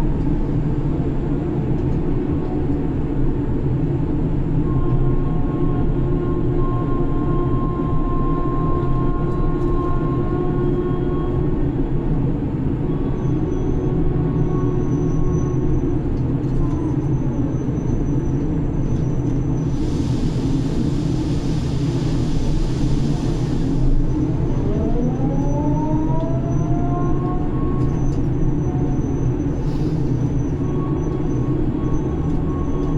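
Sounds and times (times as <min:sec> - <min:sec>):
crane machinery drone: 0:00.0 - 0:32.9
hiss: 0:19.7 - 0:24.2.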